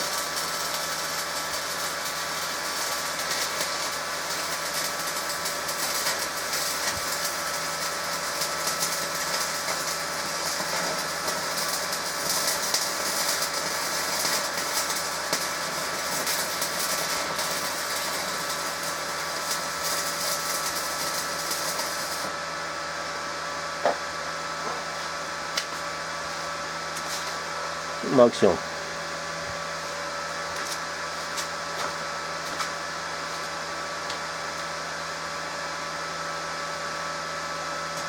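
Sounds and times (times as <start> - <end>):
welding arc crackling and hissing: 0.0 - 38.0.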